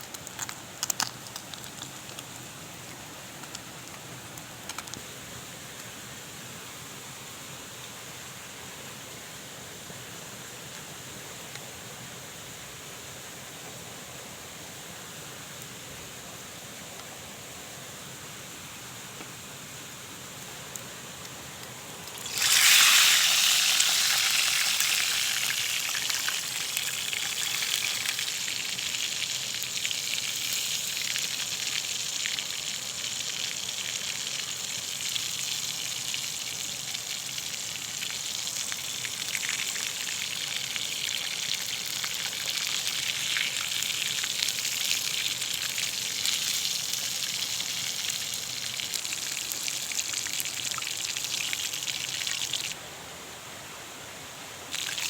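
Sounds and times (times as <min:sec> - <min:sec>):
faint hiss: 0:00.0 - 0:55.0
food sizzling in hot oil: 0:22.0 - 0:52.8, 0:54.7 - 0:55.0.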